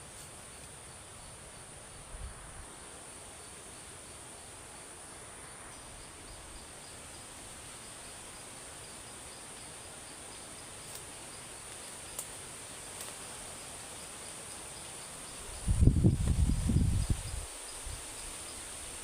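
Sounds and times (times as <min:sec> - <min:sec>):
cricket-like chirp: 0:00.0 - 0:19.0
faint clicks: 0:12.1 - 0:12.4
high-pitched insect drone: 0:13.5 - 0:19.0.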